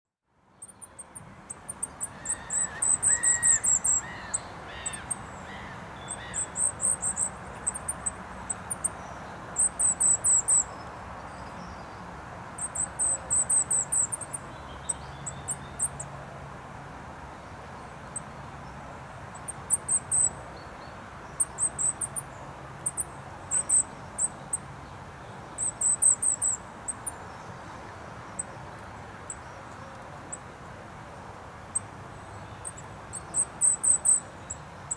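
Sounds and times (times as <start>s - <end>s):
steady traffic noise: 0.2s - 34.9s
lower bird chirps: 0.5s - 9.0s, 9.6s - 11.9s, 19.3s - 27.5s, 32.5s - 34.9s.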